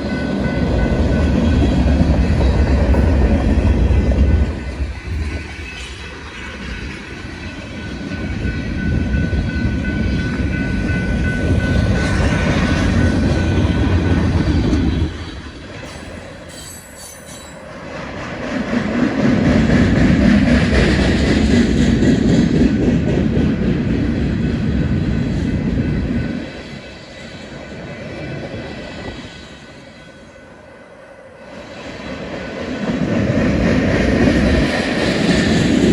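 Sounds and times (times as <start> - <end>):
freight train cars rumbling past: 0.0 - 35.9
steel wheel squeal: 15.8 - 17.8.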